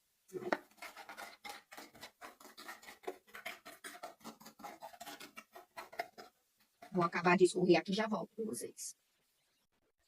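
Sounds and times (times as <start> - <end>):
pulp scraped in a sieve: 0.4 - 7.2.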